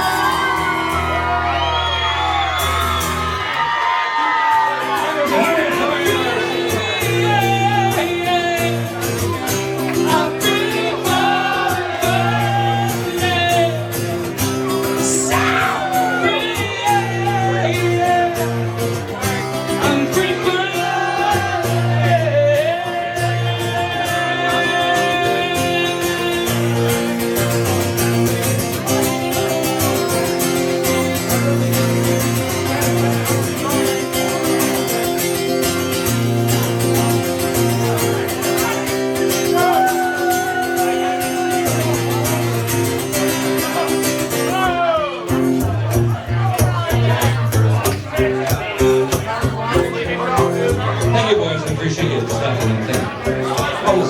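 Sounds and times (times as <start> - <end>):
live country-rock band: 0.0 - 54.0
man singing: 5.2 - 30.3, 38.1 - 45.6, 46.3 - 54.0.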